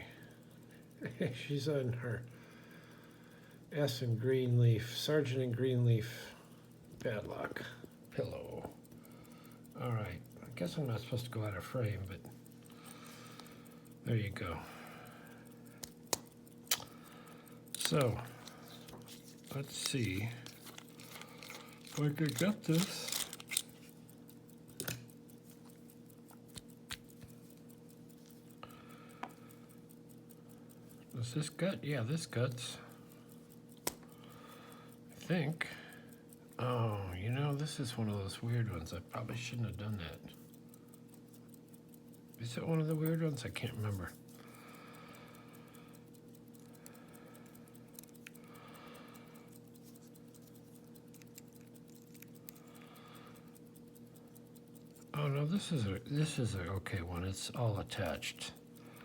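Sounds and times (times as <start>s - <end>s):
faint steady hum: 0.0s - 59.0s
padlock parts clicking: 15.4s - 17.0s, 17.7s - 28.4s, 46.6s - 48.4s, 49.5s - 55.2s.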